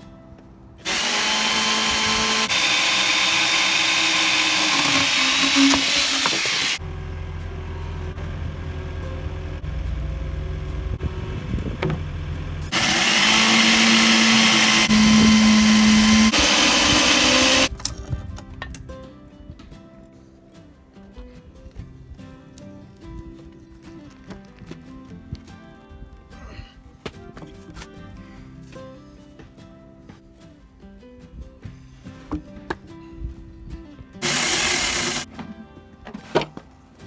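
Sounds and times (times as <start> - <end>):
power saw cutting wood: 0.8 - 6.8, 12.5 - 17.7, 34.2 - 35.3.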